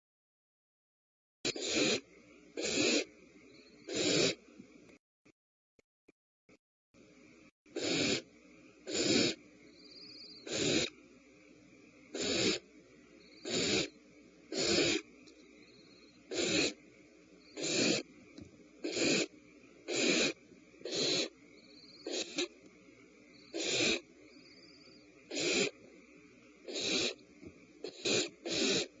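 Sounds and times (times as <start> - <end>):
nestling bird hissing calls: 1.5 - 3.1, 3.7 - 4.4, 7.8 - 11.0, 12.1 - 15.1, 15.7 - 16.8, 17.5 - 18.1, 18.8 - 22.6, 23.4 - 25.8, 26.6 - 27.2, 27.8 - 29.0.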